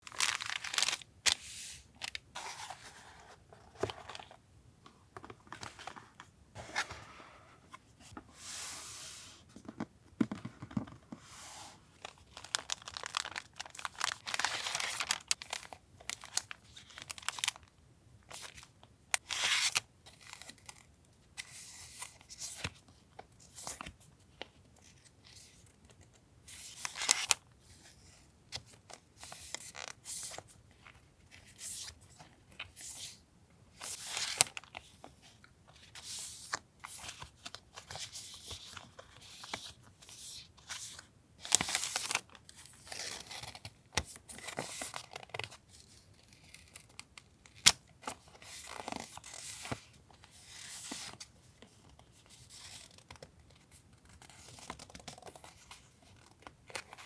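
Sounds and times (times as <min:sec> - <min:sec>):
packaging crinkling and rustling: 0:00.0 - 0:04.4, 0:12.0 - 0:17.7.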